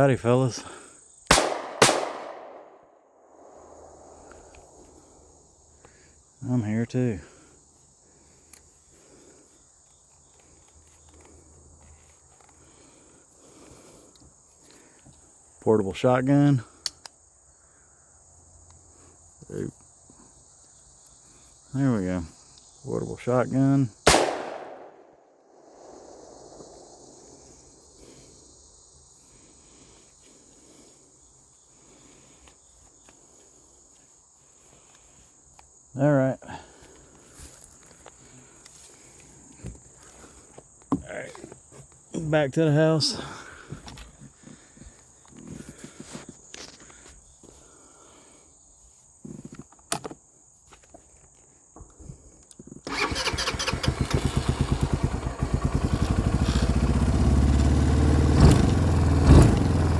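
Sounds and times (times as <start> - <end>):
crickets droning: 0.0 - 59.9
shotgun shot with echo: 1.3 - 2.8, 24.1 - 25.0.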